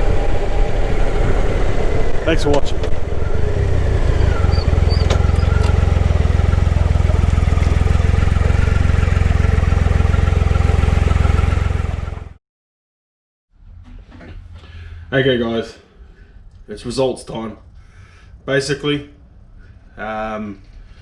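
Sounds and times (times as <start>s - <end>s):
motorcycle engine running: 0.0s - 12.4s.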